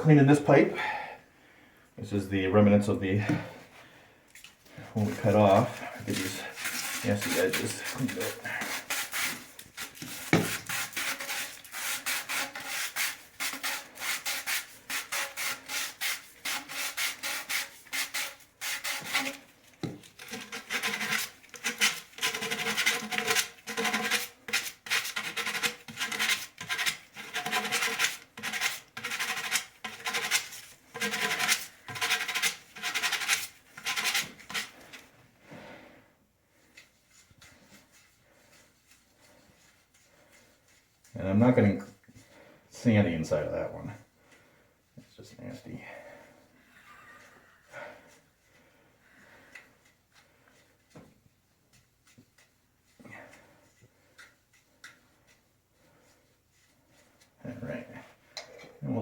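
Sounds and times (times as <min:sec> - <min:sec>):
sandpaper rubbing on pipe: 0:05.0 - 0:35.1.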